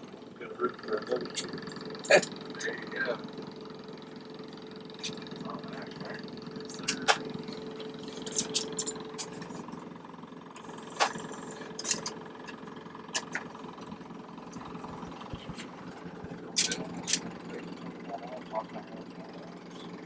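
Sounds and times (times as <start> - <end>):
engine idling: 0.0 - 20.0
clicks of tools being handled: 8.2 - 9.5.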